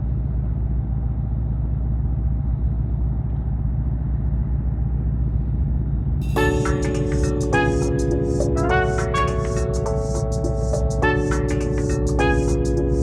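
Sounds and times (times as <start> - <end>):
music with pitched notes: 6.3 - 13.0.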